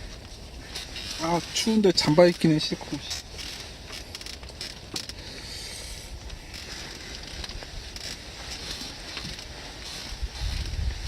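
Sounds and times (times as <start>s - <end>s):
light ticks and crackles: 0.0s - 11.0s
wind rumbling on microphone: 5.4s - 11.0s.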